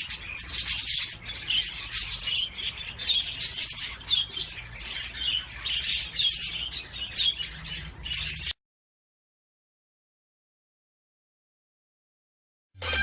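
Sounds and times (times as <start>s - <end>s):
small birds chirping and twittering: 0.0s - 8.6s.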